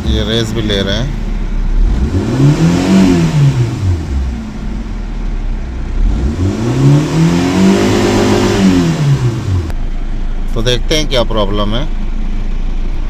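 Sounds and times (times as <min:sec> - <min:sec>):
car engine revving: 0:00.0 - 0:09.8.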